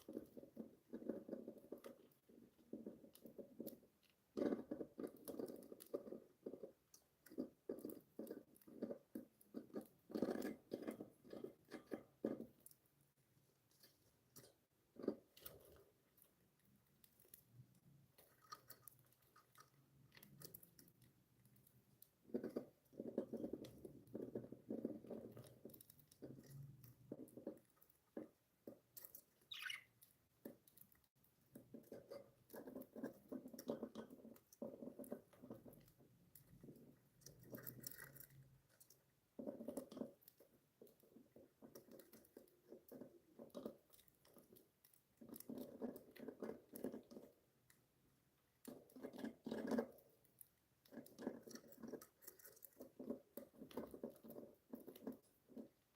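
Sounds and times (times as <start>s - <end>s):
budgies chewing: 13.6s - 55.9s
budgie chirp: 29.5s - 29.9s.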